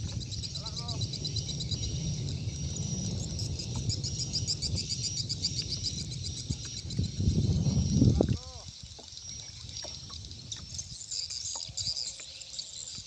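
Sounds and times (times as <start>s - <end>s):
low rumbling noise: 0.0s - 8.6s
insects chirping: 0.0s - 13.0s.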